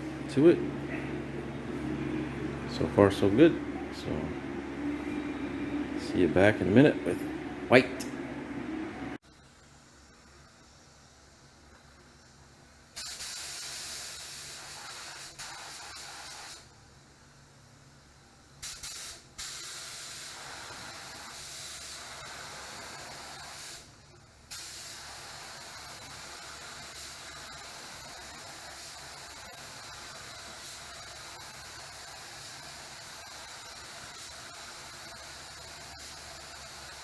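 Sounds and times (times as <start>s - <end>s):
paint spray gun hissing: 24.5s - 37.0s.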